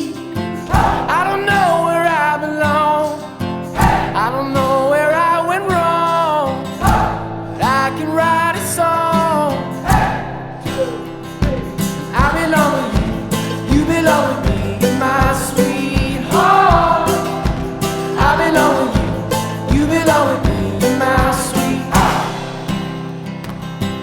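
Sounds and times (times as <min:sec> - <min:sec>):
person singing: 0:00.0 - 0:03.2, 0:03.8 - 0:22.7
guitar: 0:00.0 - 0:24.0
steady beat: 0:00.7 - 0:01.1, 0:09.9 - 0:23.1.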